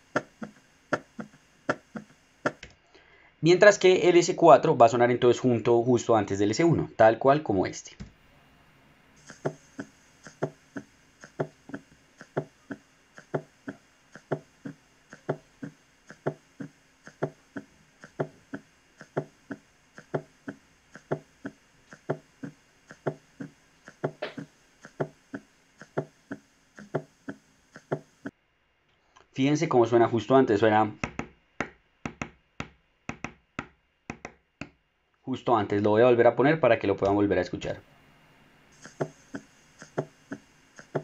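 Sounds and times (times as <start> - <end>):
heartbeat thuds through stethoscope: 9.3 - 28.3.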